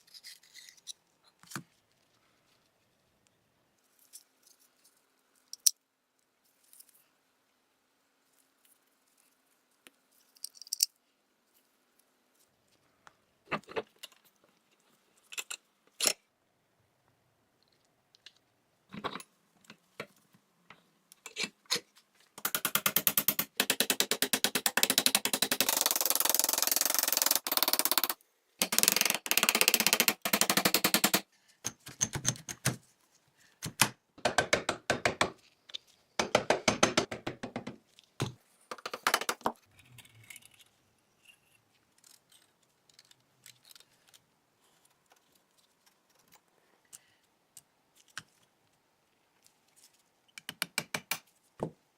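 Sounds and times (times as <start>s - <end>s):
metal parts clicking and knocking: 10.4s - 11.0s, 21.2s - 32.8s.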